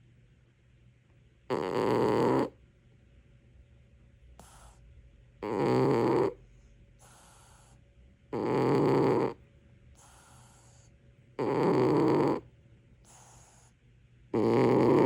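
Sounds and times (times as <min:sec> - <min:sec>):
cat snoring: 0:01.5 - 0:02.6, 0:05.4 - 0:06.4, 0:07.0 - 0:09.4, 0:10.0 - 0:13.7, 0:14.4 - 0:15.0
cat breathing: 0:04.4 - 0:04.8, 0:06.0 - 0:07.8, 0:09.9 - 0:11.0, 0:13.0 - 0:13.8.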